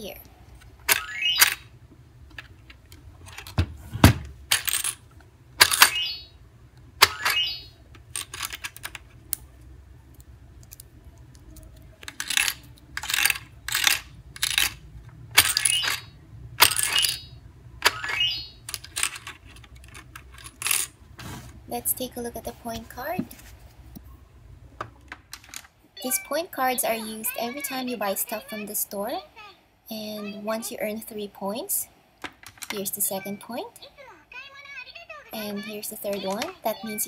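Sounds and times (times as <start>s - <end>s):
plastic toy coins clinking: 0.9s - 1.7s, 4.5s - 6.2s, 7.0s - 9.2s, 10.6s - 21.0s.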